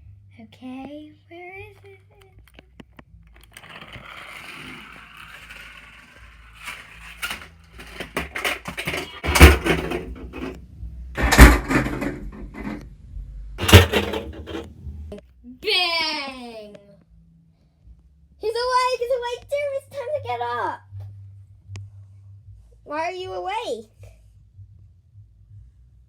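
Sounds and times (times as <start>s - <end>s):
toy car whirring: 3.4s - 10.6s
clacks and knocks: 3.5s - 10.6s, 11.2s - 12.8s, 13.6s - 14.7s
loud crashes: 3.6s - 10.6s, 13.6s - 14.7s.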